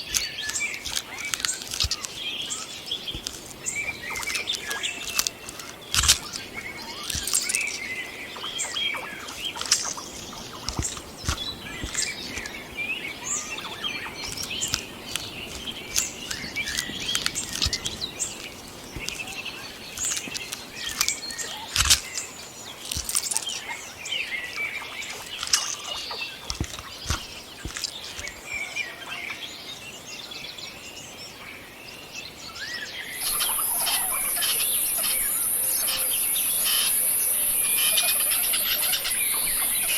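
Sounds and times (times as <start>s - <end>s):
sharp clicks and rustles: 0.0s - 7.9s, 9.3s - 23.6s, 25.3s - 28.3s, 33.2s - 39.9s
birds chirping and calling: 0.0s - 29.6s, 32.6s - 39.9s.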